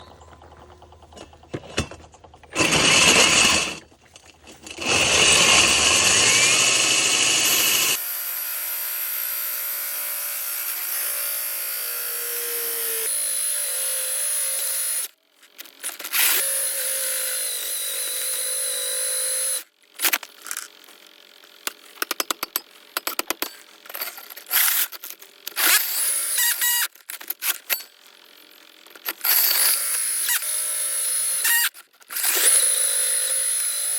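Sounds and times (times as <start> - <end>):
core drill motor whine: 2.5 - 3.8, 4.7 - 19.8, 24.5 - 27.8, 28.6 - 33.9.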